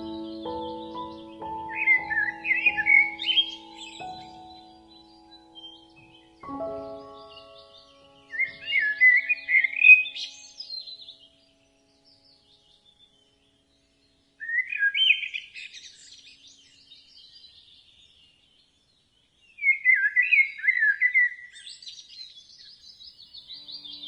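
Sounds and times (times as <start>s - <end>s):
bird twittering: 0.0s - 11.1s, 23.5s - 24.0s
songbird chirping: 0.0s - 24.0s.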